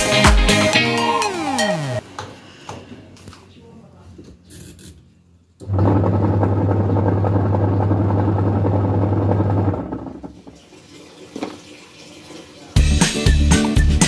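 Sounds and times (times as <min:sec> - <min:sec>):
washing machine motor hum: 0:05.6 - 0:11.3
washing machine churning rumble: 0:05.7 - 0:10.6.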